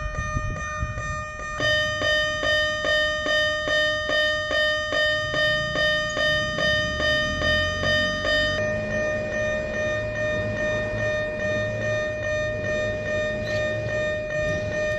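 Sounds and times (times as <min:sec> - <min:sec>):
railway crossing alarm ringing: 0:00.0 - 0:14.9.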